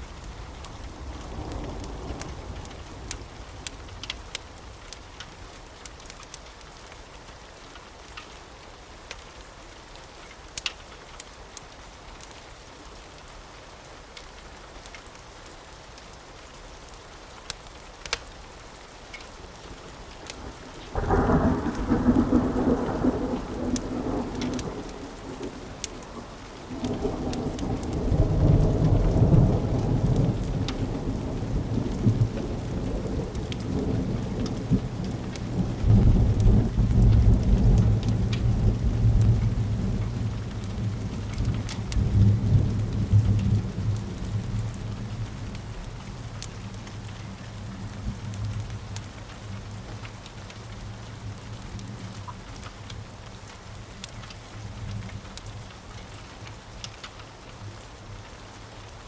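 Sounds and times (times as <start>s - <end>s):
steady rain: 0.0s - 59.0s
thunder rumbling: 0.5s - 4.3s, 20.4s - 46.4s.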